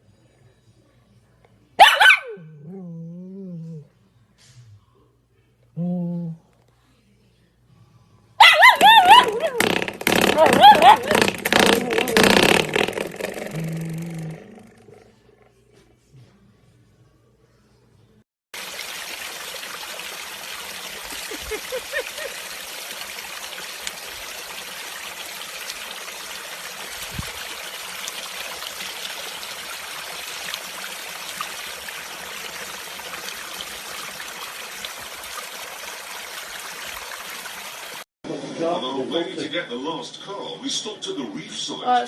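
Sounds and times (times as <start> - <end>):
running water rushing: 8.4 - 14.8, 18.5 - 38.1.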